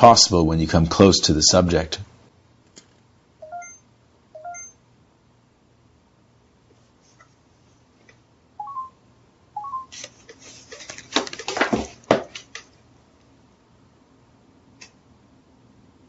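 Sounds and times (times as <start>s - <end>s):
two-note electronic beeps: 3.4s - 3.8s, 4.4s - 4.8s, 8.6s - 9.0s, 9.6s - 9.9s.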